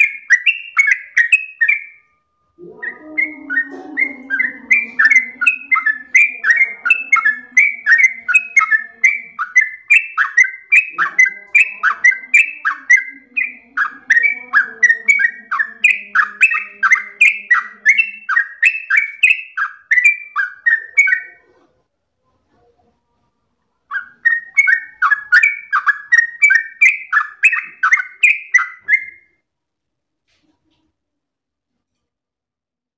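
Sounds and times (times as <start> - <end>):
bird singing bubbly whistles: 0.0 - 2.0, 2.6 - 21.3, 23.9 - 29.3.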